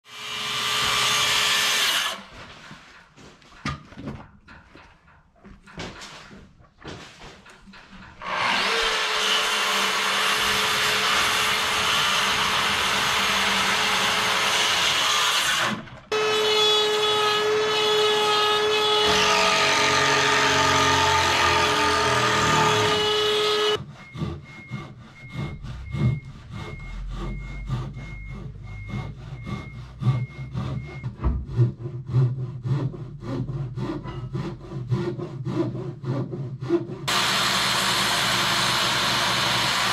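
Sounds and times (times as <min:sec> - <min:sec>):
power tools cutting wood: 0:00.0 - 0:02.4, 0:08.2 - 0:39.9
hand sawing through timber: 0:08.0 - 0:39.9.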